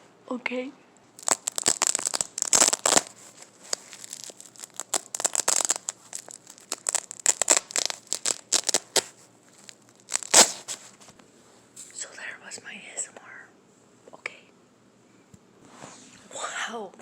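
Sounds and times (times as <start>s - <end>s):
velcro strap ripping: 1.2s - 11.0s.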